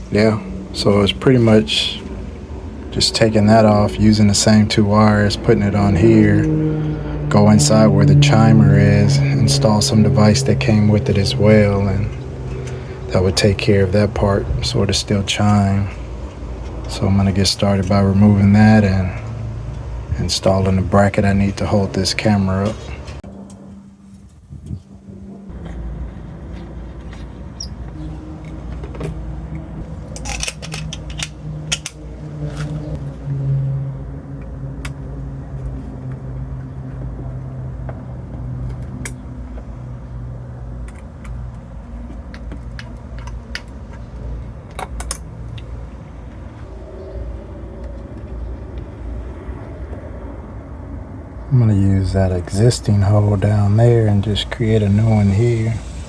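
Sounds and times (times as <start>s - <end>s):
steady low hum: 0.0s - 56.0s
sharp clicks and rattles: 25.6s - 33.0s, 40.8s - 46.0s.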